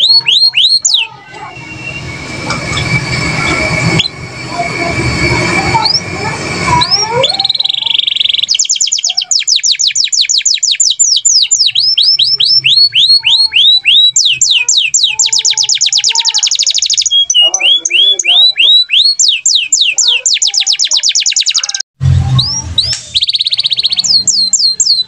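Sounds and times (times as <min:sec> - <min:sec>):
canary singing: 0:00.0 - 0:25.0
low rumble: 0:01.1 - 0:08.2, 0:22.0 - 0:23.2.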